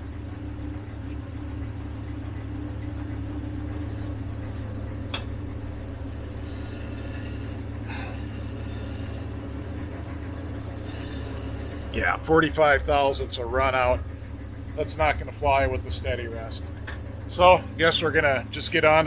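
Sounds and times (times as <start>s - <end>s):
low machine hum: 0.0s - 19.0s
thin high whine: 5.6s - 14.0s.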